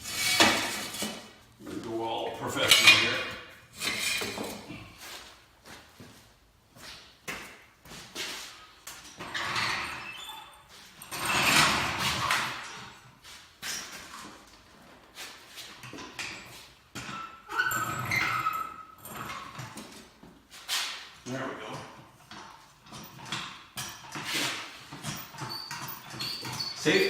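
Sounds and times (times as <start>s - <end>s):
equipment knocks and scraping: 2.5s - 4.9s
short squeak: 25.2s - 27.0s.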